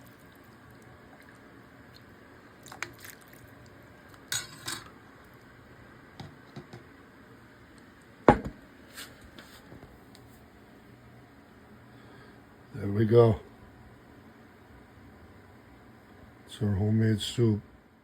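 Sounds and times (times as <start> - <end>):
utensils clinking against dishes: 4.3 - 4.9.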